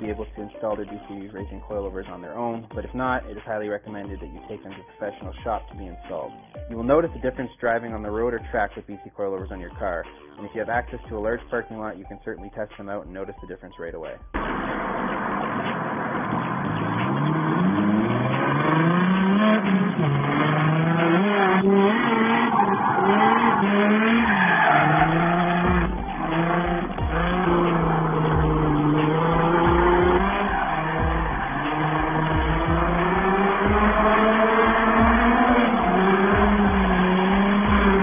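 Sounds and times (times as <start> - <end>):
car engine revving: 14.4 - 38.0
tyres squealing: 16.8 - 38.0
low irregular thuds: 25.6 - 38.0.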